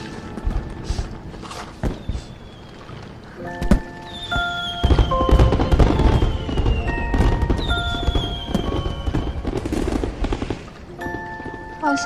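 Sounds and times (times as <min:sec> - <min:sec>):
background music: 0:00.0 - 0:12.0
fireworks bursting and crackling: 0:00.0 - 0:12.0
falling whistling tones: 0:01.8 - 0:10.6.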